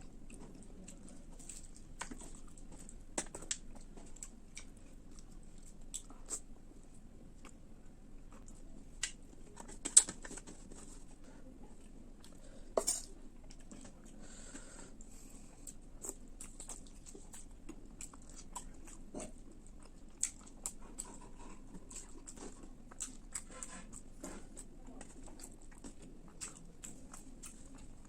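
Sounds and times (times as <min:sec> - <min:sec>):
person chewing with mouth smacks: 0:00.0 - 0:06.5, 0:14.9 - 0:28.0
food crunching: 0:08.2 - 0:11.0, 0:15.5 - 0:28.0.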